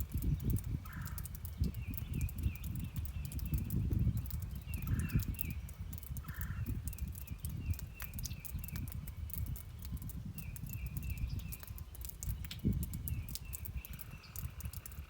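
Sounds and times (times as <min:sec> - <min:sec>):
raindrops ticking: 0:00.0 - 0:15.0.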